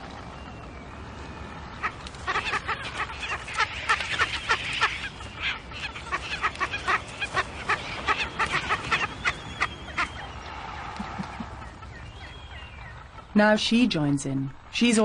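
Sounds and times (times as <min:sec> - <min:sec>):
frigatebirds harsh calls: 0:00.0 - 0:15.0.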